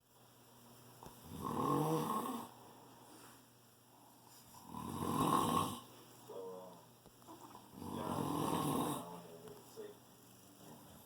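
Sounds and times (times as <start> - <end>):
man snoring: 1.2 - 2.5, 4.6 - 5.9, 7.7 - 9.2.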